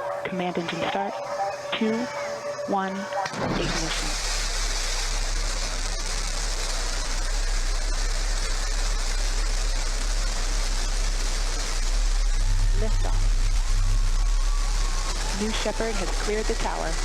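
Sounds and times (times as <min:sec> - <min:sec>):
rocket engine hiss and rumble: 0:03.6 - 0:17.0.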